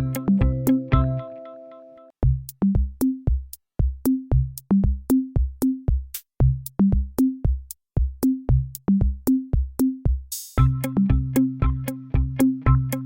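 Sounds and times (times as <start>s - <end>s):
electronic drum machine beat: 0.0s - 1.2s, 2.2s - 13.0s.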